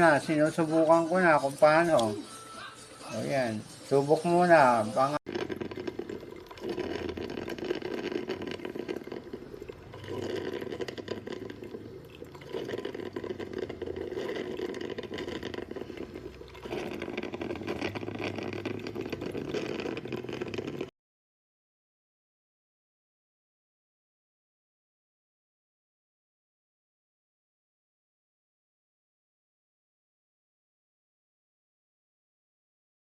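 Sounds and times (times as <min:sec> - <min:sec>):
coffee maker brewing hiss: 0:00.0 - 0:20.9.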